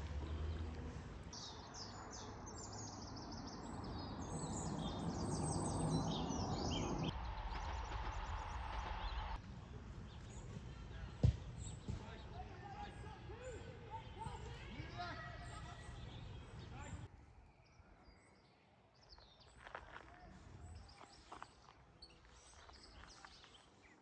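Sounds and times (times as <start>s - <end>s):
songbird chirping: 0.0s - 24.0s.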